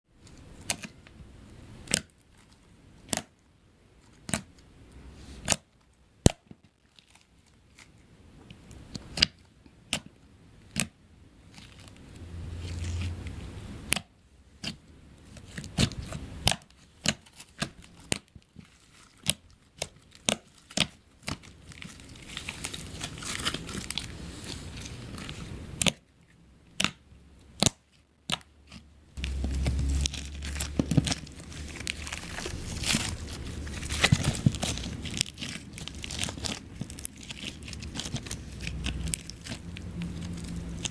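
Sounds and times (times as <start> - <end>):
slime crackling: 8.7 - 26.0, 27.6 - 40.9.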